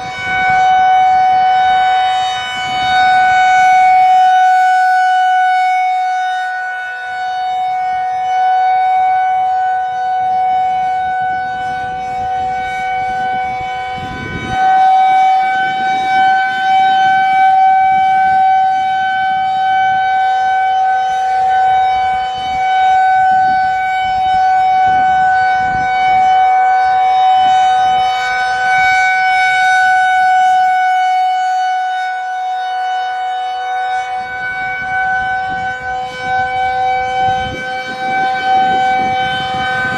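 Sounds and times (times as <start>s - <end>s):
rotating warning siren: 0.0s - 39.9s.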